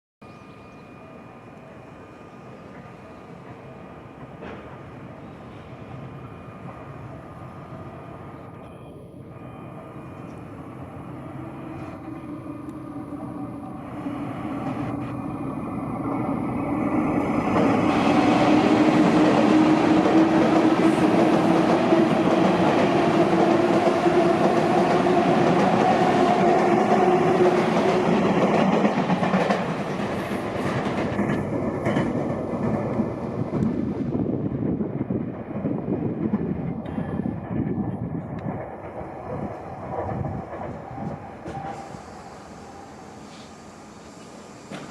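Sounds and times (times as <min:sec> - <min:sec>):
electric train motor whine: 0:07.7 - 0:19.0
rail clatter: 0:17.2 - 0:33.8.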